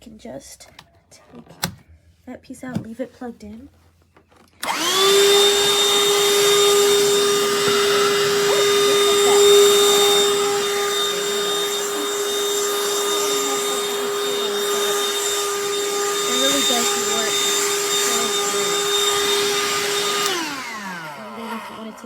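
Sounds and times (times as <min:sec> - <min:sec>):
handheld vacuum running: 0:04.6 - 0:22.0.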